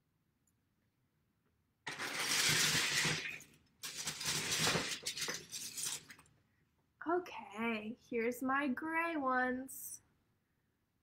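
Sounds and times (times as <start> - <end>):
plastic bricks clattering: 1.9 - 6.3.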